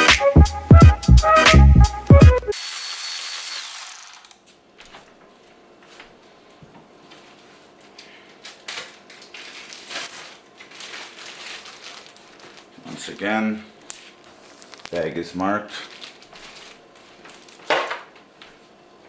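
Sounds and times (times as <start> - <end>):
small metal parts clinking: 8.7 - 13.3.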